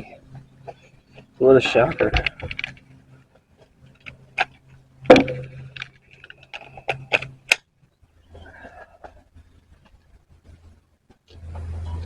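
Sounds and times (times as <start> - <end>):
metal tools clanking: 0.0 - 2.9
faint low hum: 0.0 - 12.0.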